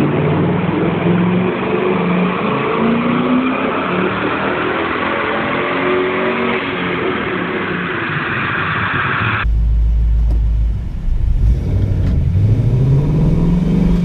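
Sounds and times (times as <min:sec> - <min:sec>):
car engine running: 0:09.4 - 0:14.0.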